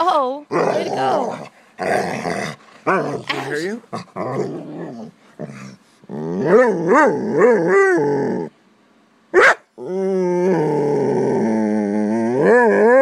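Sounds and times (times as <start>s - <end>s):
dog whining and howling: 4.2s - 8.5s, 9.4s - 13.0s
dog yip: 9.4s - 9.7s.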